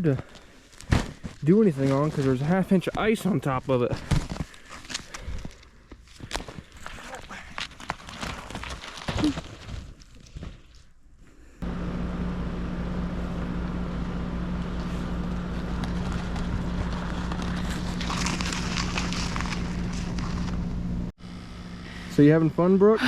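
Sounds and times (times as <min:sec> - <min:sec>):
footsteps crunching on icy snow: 0:00.0 - 0:10.8, 0:14.4 - 0:20.9
steady engine-like hum: 0:11.6 - 0:23.0
crackling: 0:13.3 - 0:21.1.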